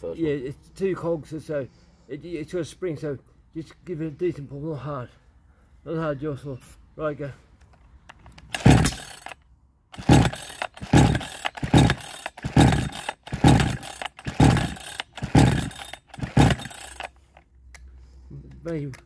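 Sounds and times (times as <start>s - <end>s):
chainsaw being pull-started: 8.3s - 17.4s.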